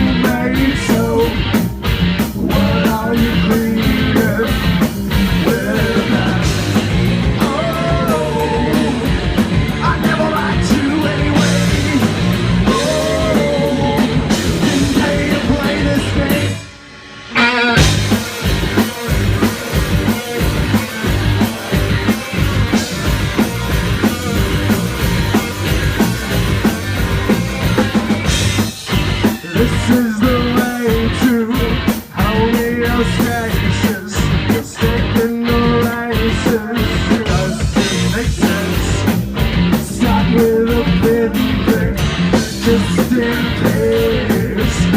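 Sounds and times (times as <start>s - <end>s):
person singing: 0.0s - 1.6s, 2.4s - 16.6s, 29.2s - 39.1s, 39.8s - 44.9s
drum kit: 0.0s - 44.9s
electric guitar: 0.0s - 44.9s.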